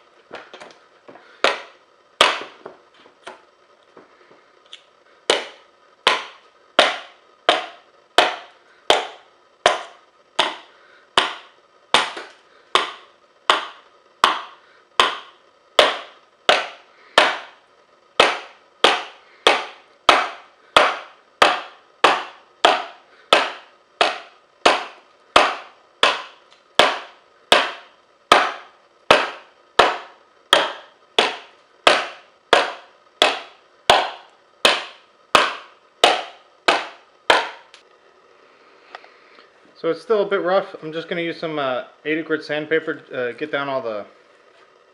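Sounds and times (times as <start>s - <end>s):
blade chopping into wood: 1.4s - 2.6s, 5.3s - 17.6s, 18.2s - 37.7s.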